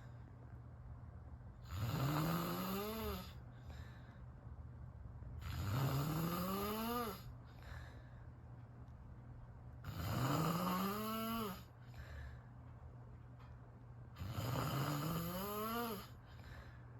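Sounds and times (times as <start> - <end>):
steady low hum: 0.0 - 16.9
person snoring: 1.7 - 3.4, 5.4 - 7.3, 9.9 - 11.7, 14.2 - 16.2.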